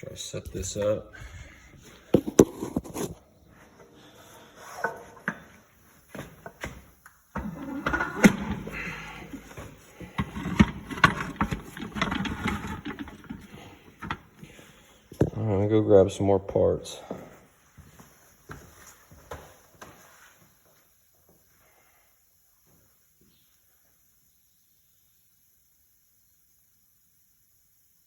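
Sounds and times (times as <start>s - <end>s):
metal parts clattering and scraping: 7.4s - 14.4s
metal parts knocking: 10.2s - 14.2s.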